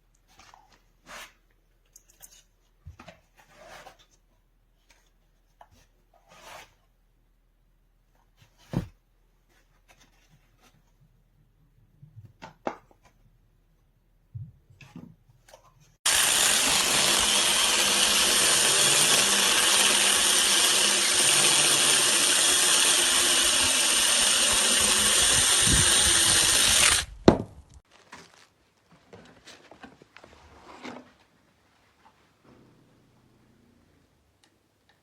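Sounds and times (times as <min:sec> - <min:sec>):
mini chainsaw running: 0:16.1 - 0:27.2.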